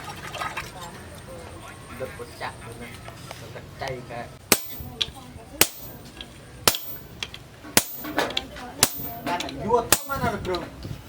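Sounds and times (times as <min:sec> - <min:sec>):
hammer striking steel on anvil: 0:04.5 - 0:05.0, 0:05.6 - 0:07.2, 0:07.8 - 0:10.3.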